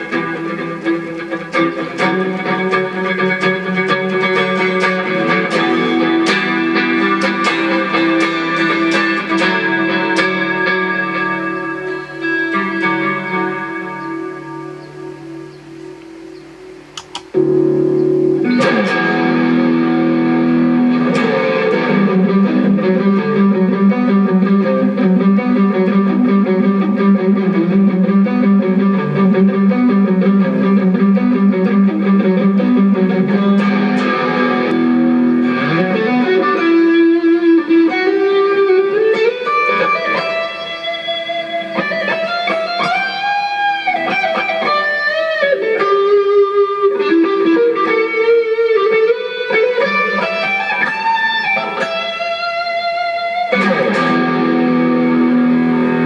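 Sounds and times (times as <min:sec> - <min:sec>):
electric guitar: 0:00.0 - 0:56.0.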